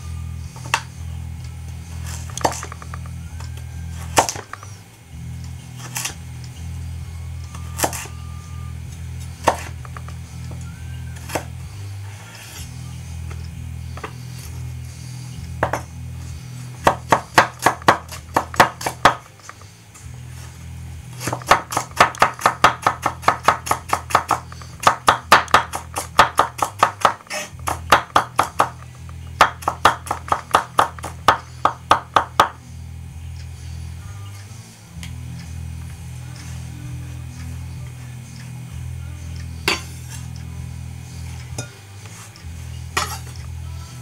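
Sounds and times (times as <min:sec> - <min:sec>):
background music: 0:00.0 - 0:44.0
knife chopping on cutting board: 0:04.1 - 0:04.5, 0:07.8 - 0:08.1, 0:09.4 - 0:09.8, 0:16.8 - 0:19.6, 0:21.2 - 0:28.8, 0:29.4 - 0:32.6.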